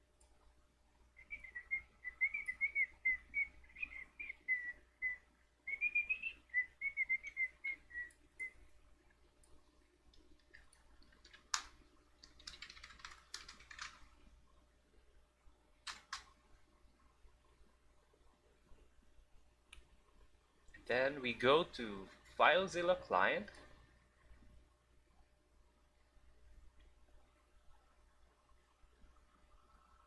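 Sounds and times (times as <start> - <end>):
computer keyboard typing: 10.1 - 14.2, 15.9 - 16.3.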